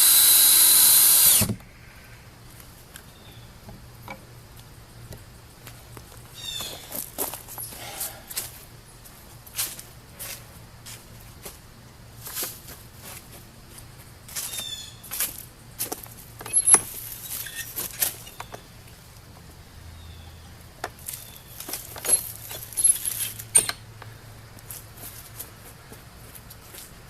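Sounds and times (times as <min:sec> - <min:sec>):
tools clicking and rattling: 0:16.4 - 0:18.6, 0:21.6 - 0:23.8.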